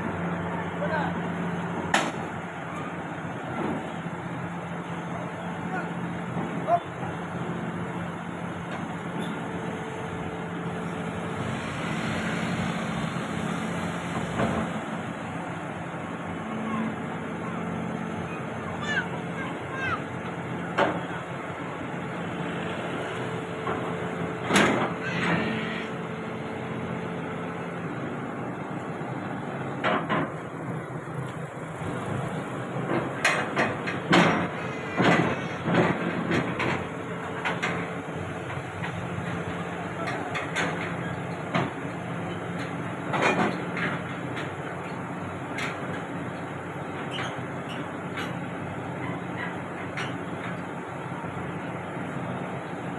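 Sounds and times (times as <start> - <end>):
diesel engine running: 0.0 - 52.9
metal clanks and bangs: 32.9 - 39.1.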